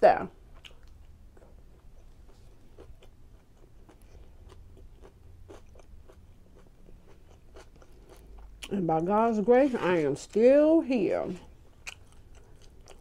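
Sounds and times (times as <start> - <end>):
person chewing: 0.4 - 8.8, 11.5 - 13.0.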